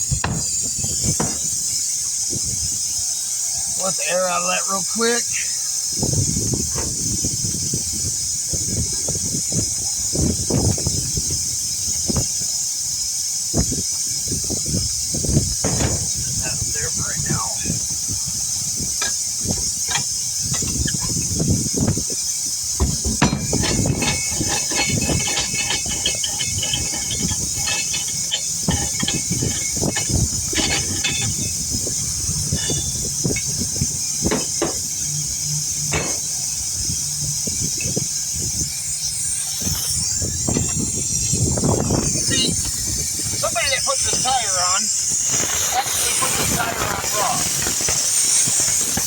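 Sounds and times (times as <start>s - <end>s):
air hissing from tire valve: 0.0s - 49.0s
handling knocks and clicks: 22.8s - 31.6s.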